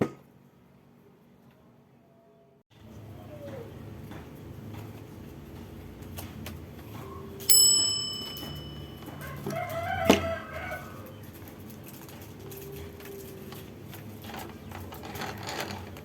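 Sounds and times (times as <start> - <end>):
bright metallic ring: 7.5 - 9.3
rooster crowing: 9.1 - 11.2.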